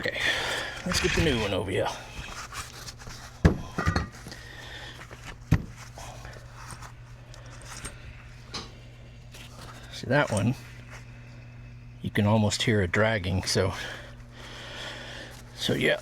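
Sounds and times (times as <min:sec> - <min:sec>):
steady low hum: 0:00.0 - 0:16.0
metal parts knocking on workbench: 0:03.5 - 0:04.2.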